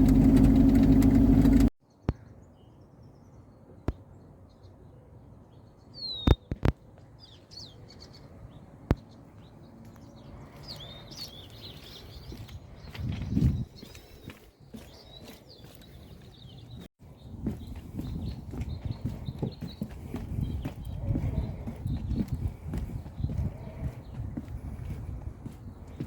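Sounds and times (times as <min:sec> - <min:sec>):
engine running: 0:00.0 - 0:01.7
bird chirps: 0:05.6 - 0:22.3.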